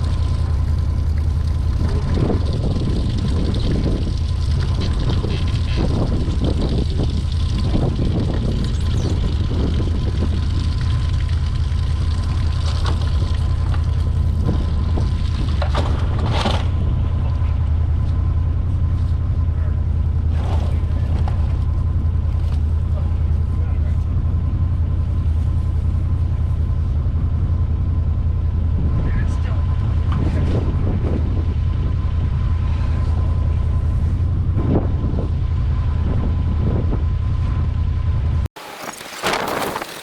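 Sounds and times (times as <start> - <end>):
low rumble: 0.0 - 38.5.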